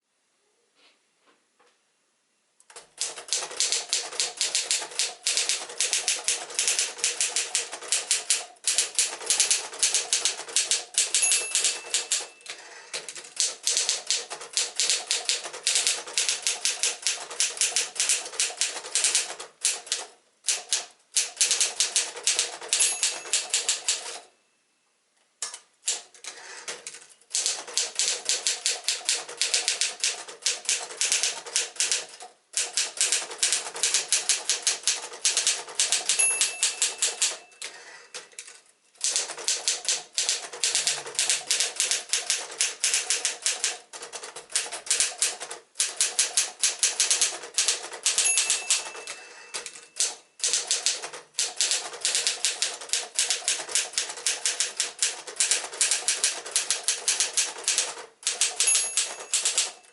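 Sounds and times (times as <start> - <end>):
typewriter keystrokes: 2.7 - 24.3, 25.4 - 59.9
typewriter bell ringing: 9.4 - 13.0, 22.5 - 24.3, 35.7 - 38.3, 47.7 - 52.4, 56.9 - 59.9.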